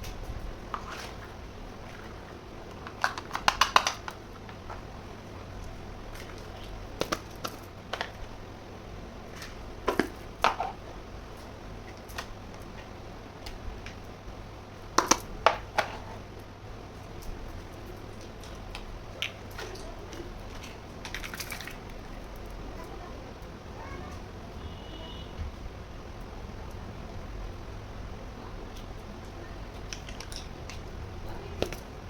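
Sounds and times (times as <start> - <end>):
steady low hum: 0.0 - 32.0
plastic toy pieces clicking: 2.7 - 4.2, 18.4 - 21.9, 29.8 - 30.8.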